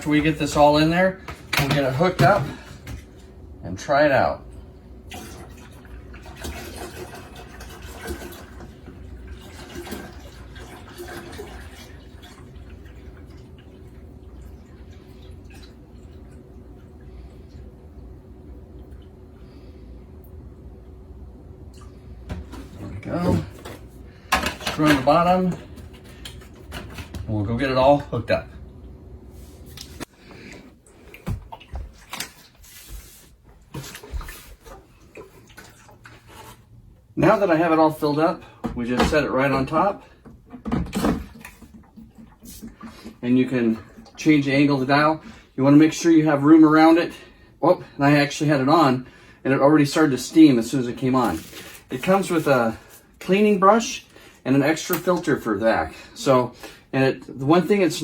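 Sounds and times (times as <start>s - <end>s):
water pouring and gurgling: 5.1s - 17.8s, 33.8s - 36.7s.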